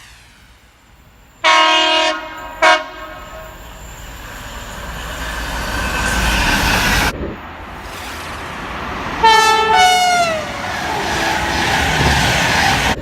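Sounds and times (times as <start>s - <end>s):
train running noise: 0.0s - 13.0s
train horn blasts: 1.4s - 3.6s, 9.2s - 11.6s.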